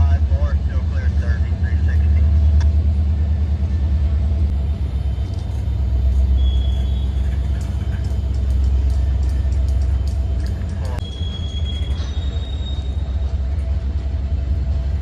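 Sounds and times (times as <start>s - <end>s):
locomotive rumbling: 0.0s - 15.0s
faint high squeal: 6.2s - 7.2s, 11.0s - 13.3s.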